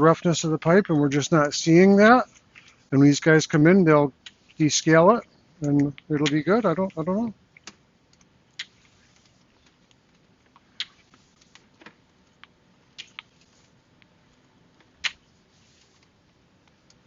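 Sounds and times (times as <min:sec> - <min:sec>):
faint steady hiss: 0:00.0 - 0:17.0.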